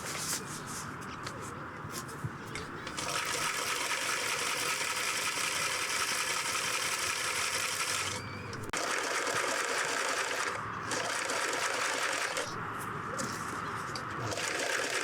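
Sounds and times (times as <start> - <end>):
sewing machine stitching: 2.9 - 8.2, 8.8 - 12.5, 14.2 - 15.0.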